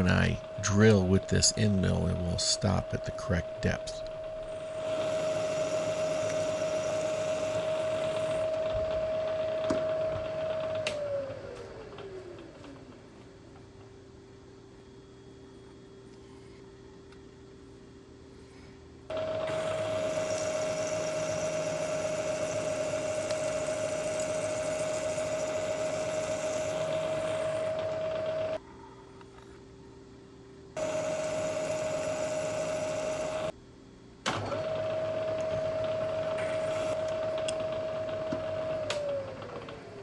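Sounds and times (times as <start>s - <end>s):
milling machine spindle humming: 0.0s - 13.9s, 19.1s - 28.6s, 30.8s - 33.6s, 34.5s - 40.0s
end mill boring steel: 19.5s - 27.8s.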